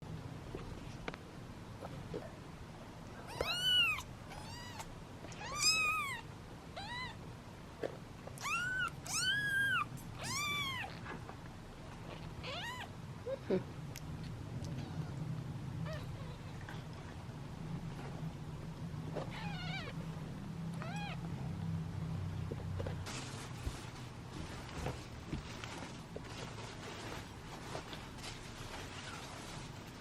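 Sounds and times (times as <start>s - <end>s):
kittens meowing: 3.2s - 7.2s, 8.4s - 11.0s, 19.2s - 20.0s, 20.8s - 21.4s.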